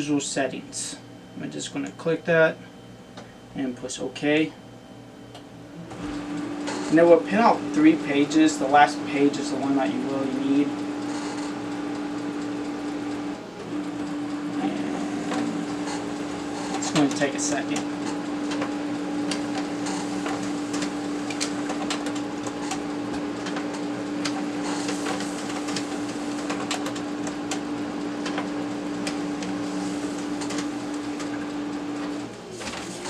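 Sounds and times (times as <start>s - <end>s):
printer motor hum: 0.0s - 33.0s
printer clicks and ticks: 16.7s - 31.5s.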